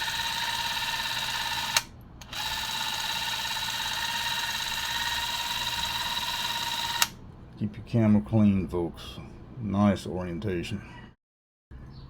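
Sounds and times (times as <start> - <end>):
clockwork camera whirring: 0.0 - 7.2.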